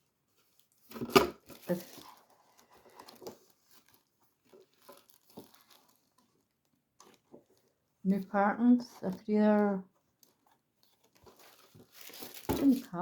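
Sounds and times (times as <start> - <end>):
packaging rustling and clicking: 0.4 - 7.8, 10.1 - 13.0.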